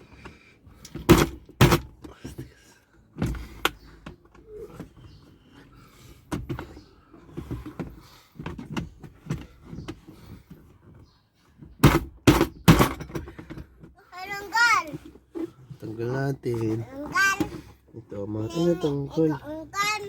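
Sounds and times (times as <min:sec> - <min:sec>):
loud clunks: 0:00.9 - 0:02.0, 0:11.8 - 0:13.7.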